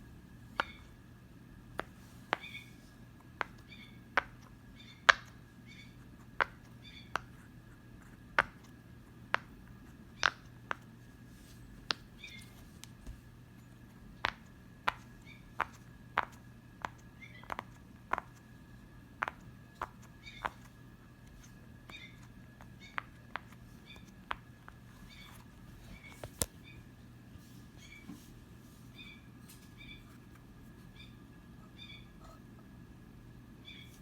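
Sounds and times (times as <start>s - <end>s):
faint high chirps: 3.6s - 4.0s, 30.9s - 32.4s, 33.6s - 34.0s.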